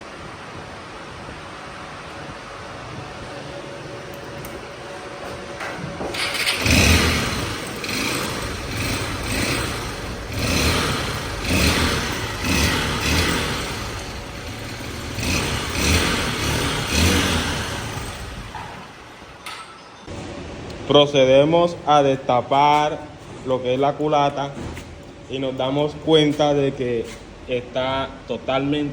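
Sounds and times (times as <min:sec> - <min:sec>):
motorcycle engine revving: 0:03.2 - 0:19.4.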